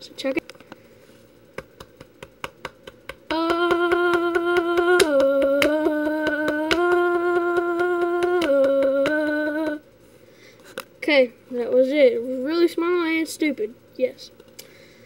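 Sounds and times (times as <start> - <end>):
hand tapping on chest: 1.6 - 9.8
man humming a note: 3.3 - 9.8.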